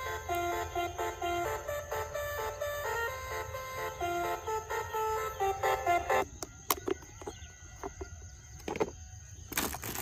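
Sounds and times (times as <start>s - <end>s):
simple electronic melody: 0.0s - 6.6s.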